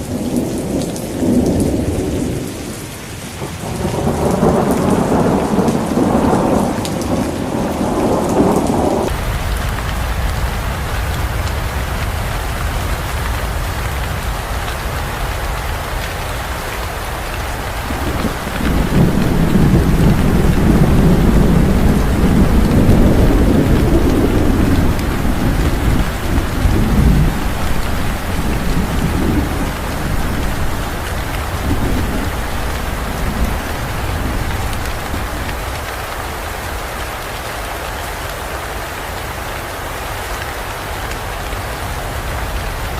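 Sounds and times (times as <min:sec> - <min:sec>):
heavy rain falling: 0:00.0 - 0:42.9
rolling thunder: 0:03.4 - 0:10.6, 0:17.4 - 0:36.4.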